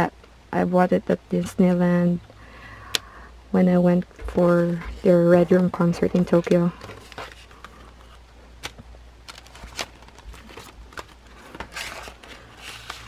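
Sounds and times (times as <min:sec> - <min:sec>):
packaging rustling: 0:05.9 - 0:13.0.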